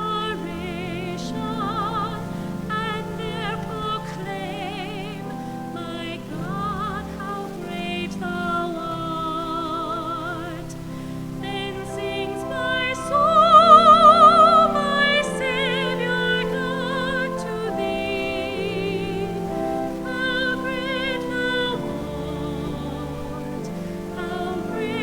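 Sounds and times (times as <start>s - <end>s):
classical solo voice singing: 0.0s - 25.0s
sustained accompaniment: 0.0s - 25.0s.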